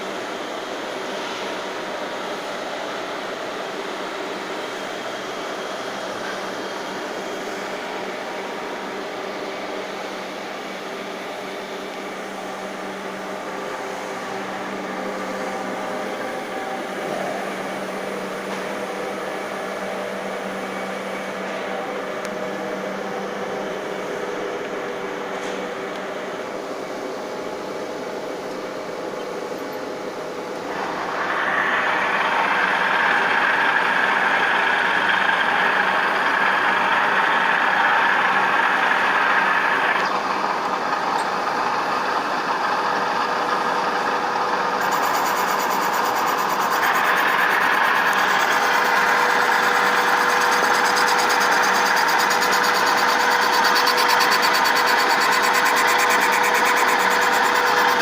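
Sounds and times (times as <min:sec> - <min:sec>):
grinding machine humming: 0:00.0 - 0:58.0
grinding wheel hissing: 0:28.8 - 0:58.0.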